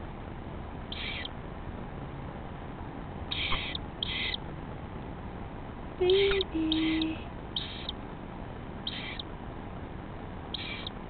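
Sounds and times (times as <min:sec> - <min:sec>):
young woodpecker squeaking: 0:00.9 - 0:01.4, 0:03.3 - 0:04.4, 0:06.0 - 0:08.0, 0:08.8 - 0:09.3, 0:10.5 - 0:11.0.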